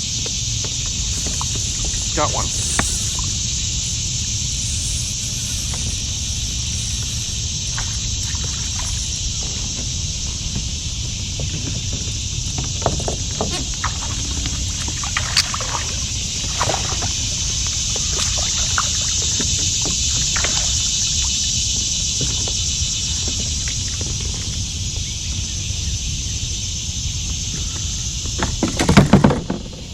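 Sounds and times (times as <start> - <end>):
steady high-pitched hiss: 0.0 - 29.9
water splashing around kayak: 0.2 - 24.6.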